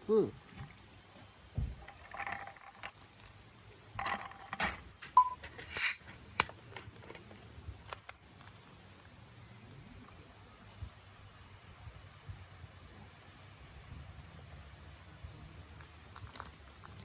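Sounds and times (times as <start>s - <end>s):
brief ping: 5.2s - 5.5s
short rushing hiss: 5.4s - 6.1s.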